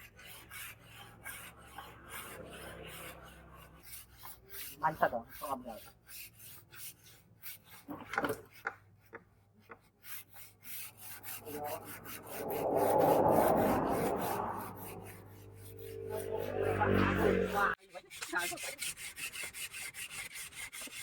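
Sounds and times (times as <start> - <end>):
scraping and rubbing on knife: 0.0 - 8.7, 9.9 - 21.0.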